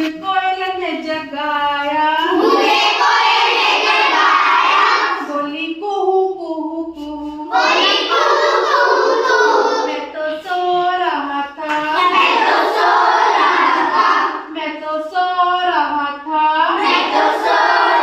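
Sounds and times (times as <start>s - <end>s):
children singing together: 2.2s - 5.5s, 7.3s - 10.5s, 11.5s - 15.1s, 16.7s - 18.0s.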